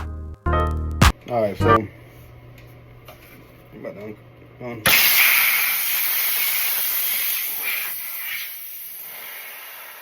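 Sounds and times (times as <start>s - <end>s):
compressed air hissing out: 4.9s - 10.0s.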